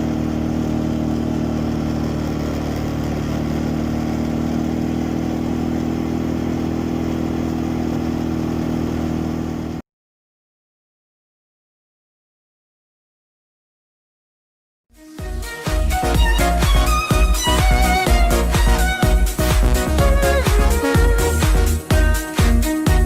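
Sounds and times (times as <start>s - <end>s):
quad bike engine running: 0.0s - 9.8s, 15.2s - 23.0s.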